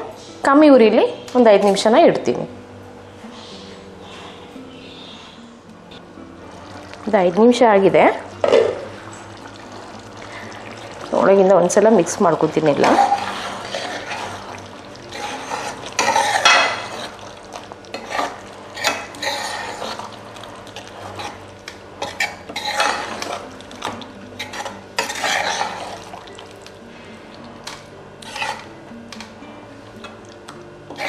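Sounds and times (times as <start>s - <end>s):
spoon scraping and clinking pan: 12.7s - 14.5s, 15.1s - 17.2s, 17.9s - 20.1s, 22.0s - 23.5s, 24.4s - 26.1s, 28.2s - 28.7s.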